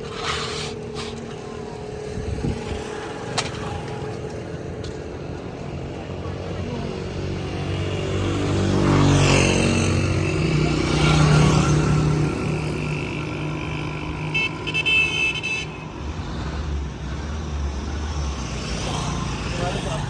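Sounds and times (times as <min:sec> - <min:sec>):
vehicle engine passing: 0:06.5 - 0:13.2.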